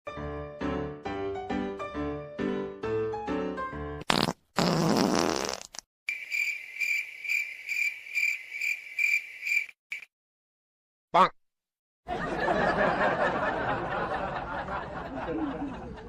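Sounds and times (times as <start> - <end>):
wet fart sound: 4.0 - 5.9
crickets chirping: 6.1 - 10.1.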